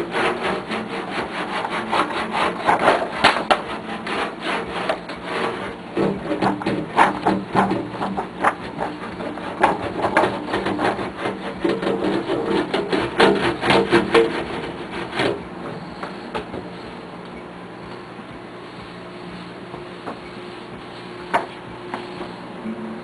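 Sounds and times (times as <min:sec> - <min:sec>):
knocking and rubbing on brass: 0:00.0 - 0:16.7.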